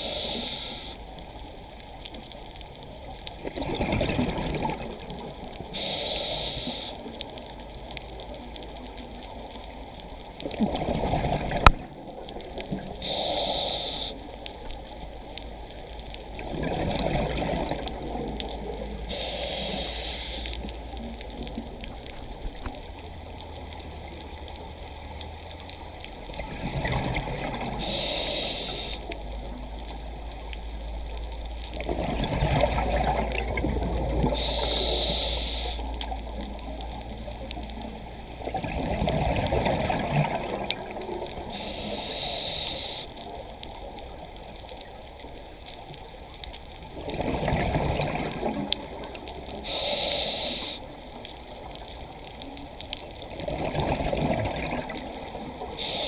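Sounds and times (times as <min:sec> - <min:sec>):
regulator inhale hiss: 0:00.0 - 0:01.2, 0:05.6 - 0:07.4, 0:12.8 - 0:14.6, 0:19.1 - 0:20.8, 0:27.8 - 0:29.2, 0:34.2 - 0:36.1, 0:41.4 - 0:44.0, 0:49.5 - 0:51.2, 0:55.6 - 0:56.0
bubbles gurgling underwater: 0:03.3 - 0:05.8, 0:10.4 - 0:13.0, 0:16.2 - 0:19.2, 0:26.3 - 0:28.0, 0:31.8 - 0:34.6, 0:35.9 - 0:41.8, 0:46.8 - 0:49.8, 0:53.1 - 0:56.0.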